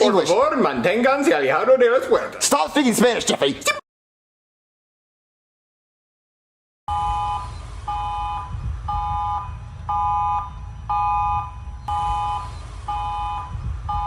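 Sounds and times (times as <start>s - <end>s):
alarm beeps: 6.9s - 14.0s
steady low rumble: 6.9s - 14.0s.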